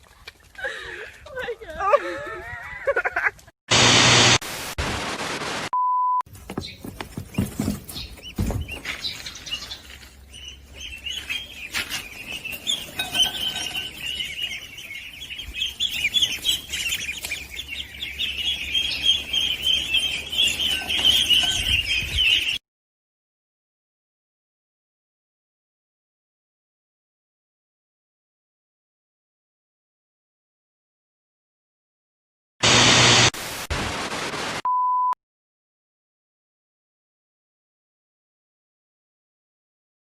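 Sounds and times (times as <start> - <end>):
loud burst of noise: 3.7 - 5.7, 32.6 - 34.6
small birds chirping: 6.3 - 22.6
short steady beep: 34.7 - 35.2.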